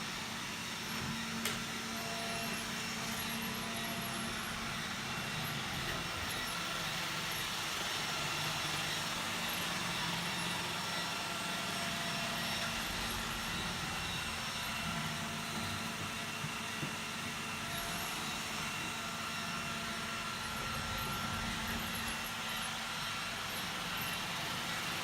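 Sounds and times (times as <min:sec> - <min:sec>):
robot vacuum whirring: 0:00.1 - 0:25.0.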